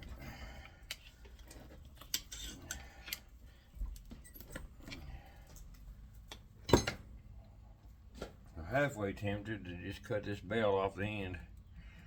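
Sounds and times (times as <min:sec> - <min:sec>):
tool clinking and tapping on metal: 0:00.9 - 0:07.1.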